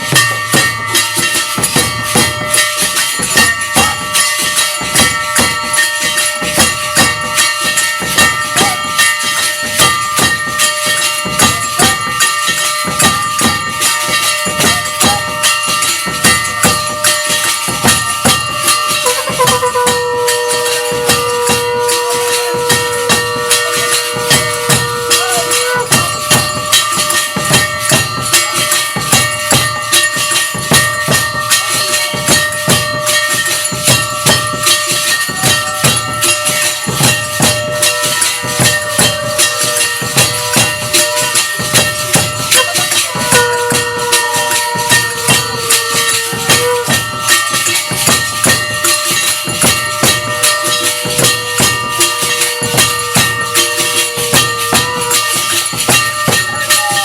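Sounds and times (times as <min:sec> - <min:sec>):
continuous ringing: 0:00.0 - 0:57.0
jingling rhythmic percussion: 0:00.0 - 0:57.0
long held tone: 0:18.9 - 0:28.1.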